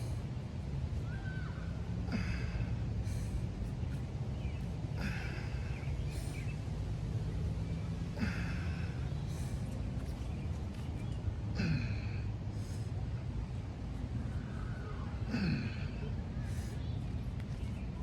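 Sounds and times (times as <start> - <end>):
low background hum: 0.0 - 18.0
man breathing hard: 2.0 - 4.1, 4.8 - 6.6, 8.1 - 9.9.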